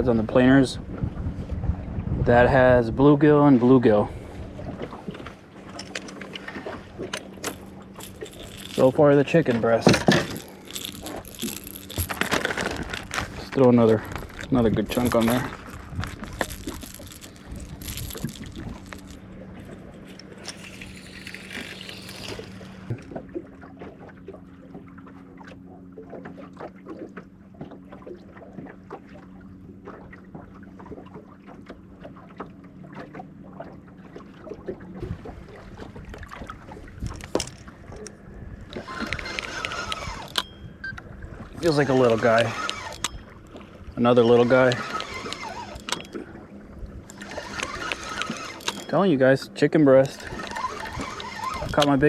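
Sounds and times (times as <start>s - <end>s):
boat motor running: 0.0s - 52.0s
fishing gear clicks and knocks: 4.8s - 23.3s, 35.9s - 52.0s.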